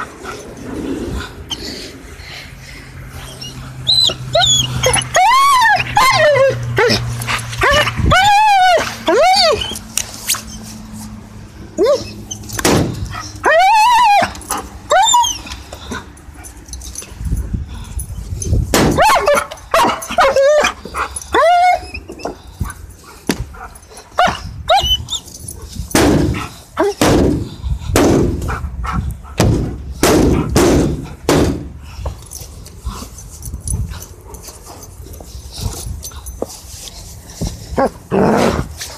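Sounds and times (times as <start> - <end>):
dog whining yelps: 3.2 - 10.7, 11.7 - 16.1, 18.9 - 22.8, 23.7 - 25.6
dog barking: 19.0 - 20.4.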